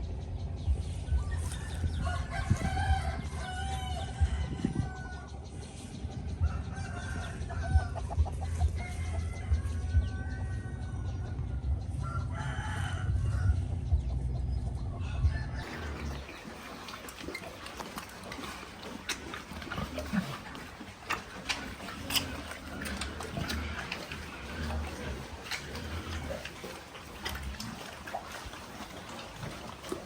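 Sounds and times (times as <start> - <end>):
chickens clucking: 6.6 - 9.1, 15.0 - 30.0.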